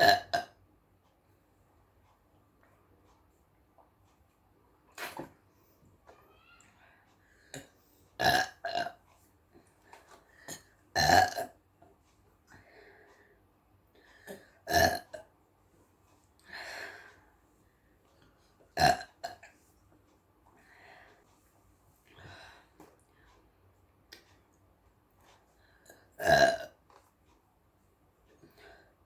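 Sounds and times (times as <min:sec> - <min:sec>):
woman burping: 0:00.0 - 0:00.5, 0:07.5 - 0:09.0, 0:10.5 - 0:11.6, 0:14.3 - 0:15.2, 0:18.8 - 0:19.4, 0:26.2 - 0:26.7.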